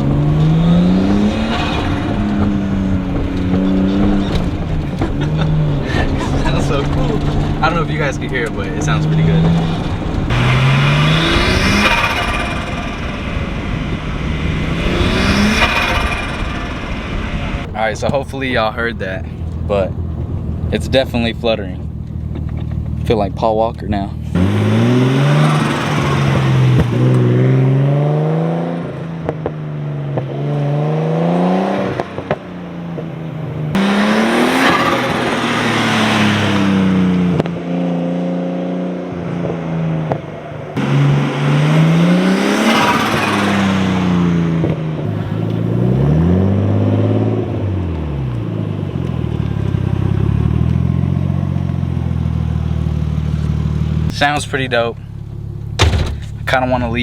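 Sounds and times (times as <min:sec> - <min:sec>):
turbocharged car engine revving: 0:00.0 - 0:19.7, 0:24.3 - 0:57.0
turbo flutter: 0:10.3 - 0:17.8.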